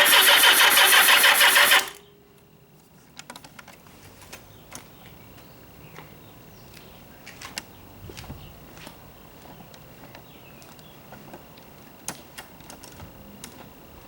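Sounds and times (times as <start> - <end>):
motorcycle starter cranking: 0.0 - 2.0.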